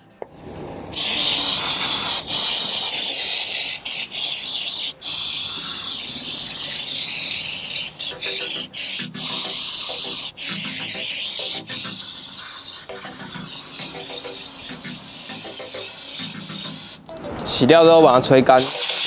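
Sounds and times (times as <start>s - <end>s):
cleaner spray hissing: 0.9s - 17.1s, 18.6s - 19.0s.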